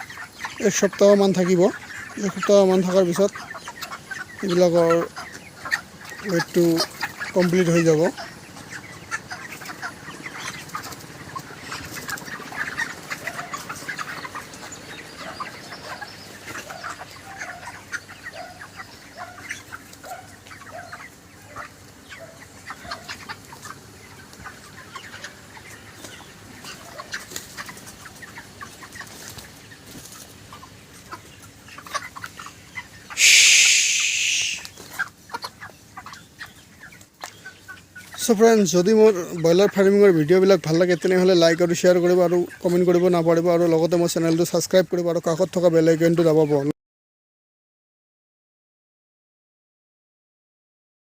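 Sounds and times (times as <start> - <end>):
chickens clucking and calling: 0.0 - 46.7
loud hissing burst: 33.2 - 34.7.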